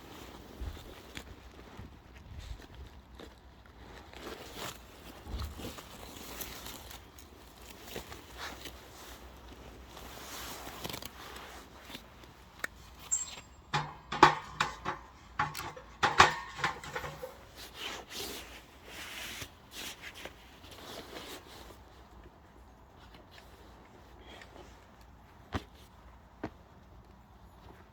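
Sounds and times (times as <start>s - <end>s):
ringing metal clanks: 13.0s - 17.5s
wooden logs knocking: 13.7s - 17.4s.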